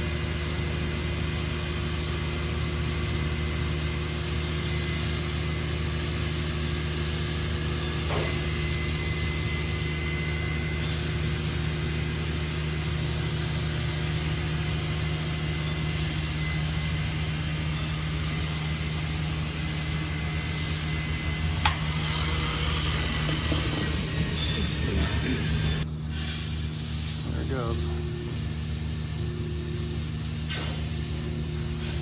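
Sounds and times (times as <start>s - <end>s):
machine humming: 21.0s - 25.8s.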